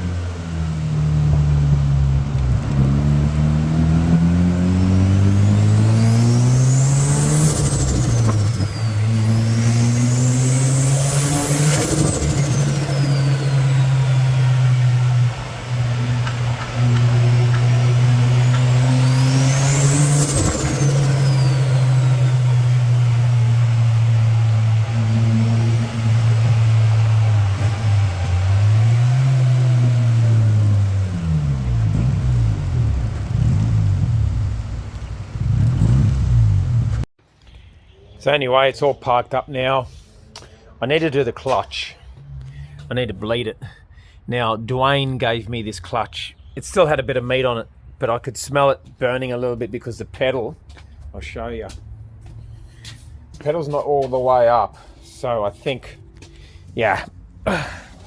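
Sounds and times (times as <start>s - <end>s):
car engine revving: 0.0s - 37.1s, 54.7s - 58.0s.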